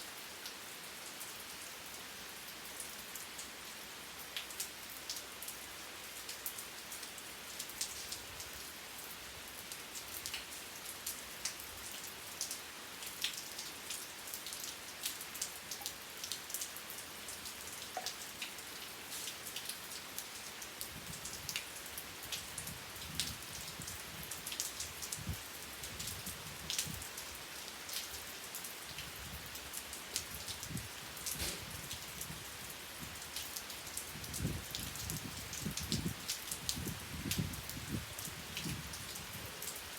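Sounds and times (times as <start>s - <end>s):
steady rain hiss: 0.0s - 39.9s
raindrops ticking on a surface: 0.1s - 39.9s.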